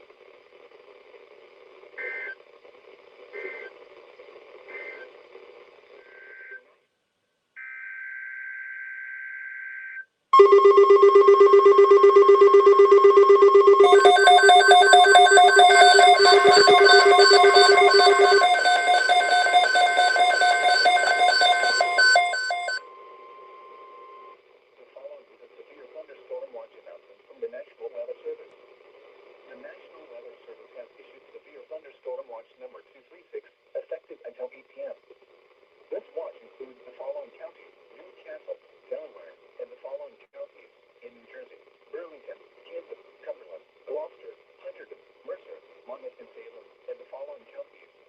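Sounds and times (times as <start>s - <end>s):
rapid pulsing ringing warble: 10.4s - 22.8s
steady electronic alert tone: 10.4s - 22.9s
screeching digital data tones: 10.4s - 23.0s.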